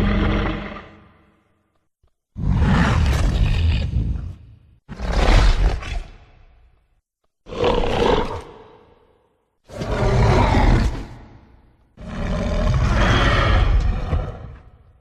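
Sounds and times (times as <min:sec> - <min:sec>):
monster roars: 0:00.0 - 0:01.1, 0:09.7 - 0:11.4, 0:12.0 - 0:14.7.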